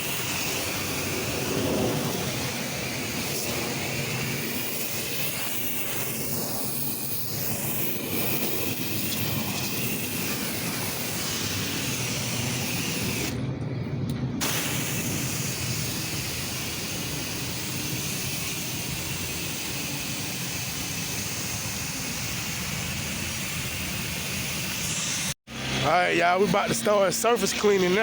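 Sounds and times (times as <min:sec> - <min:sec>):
pressure washer running: 0:00.0 - 0:13.4
water jet hissing: 0:00.0 - 0:13.4, 0:14.4 - 0:25.4.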